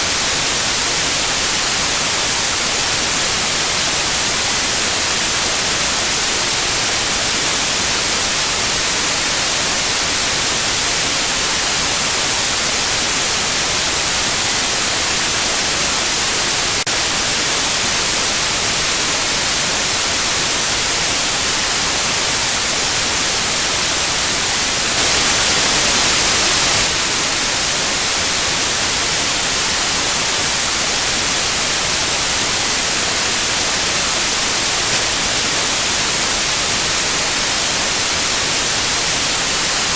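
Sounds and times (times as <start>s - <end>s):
synthetic white noise: 0.0s - 39.9s
high-pitched tone: 7.6s - 28.7s.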